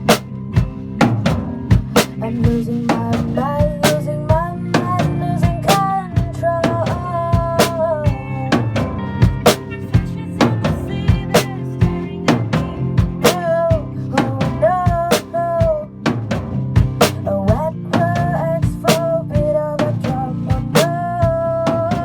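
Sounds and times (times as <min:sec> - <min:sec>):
bending guitar melody: 0:00.0 - 0:22.0
rock band playing: 0:00.0 - 0:22.0.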